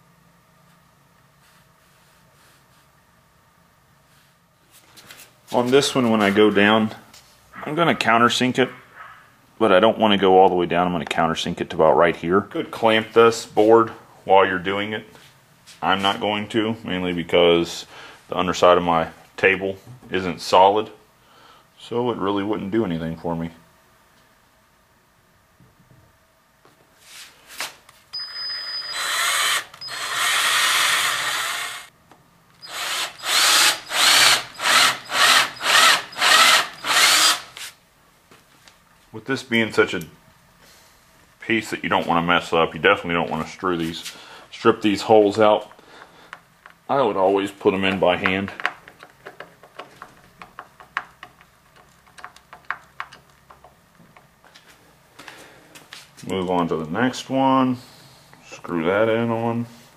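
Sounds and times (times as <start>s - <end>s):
power drill in wood: 28.2s - 31.9s, 32.6s - 37.5s
screwdriver driving screw into wood: 32.6s - 37.5s.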